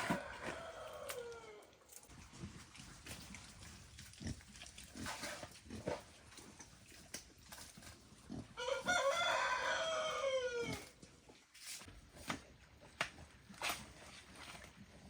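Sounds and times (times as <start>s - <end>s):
rooster crowing: 0.0s - 1.7s, 8.6s - 10.9s.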